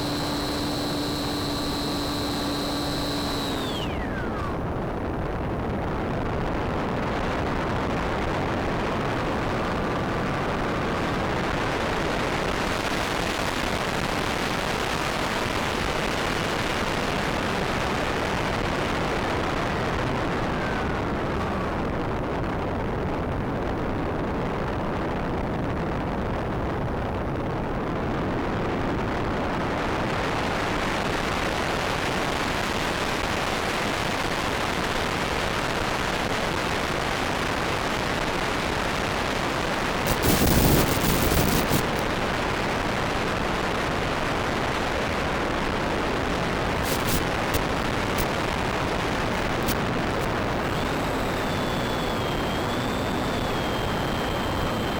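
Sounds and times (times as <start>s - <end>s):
electric motor whine: 0.0s - 5.0s, 40.0s - 42.1s, 46.7s - 54.9s
wind and propeller noise: 46.0s - 54.9s.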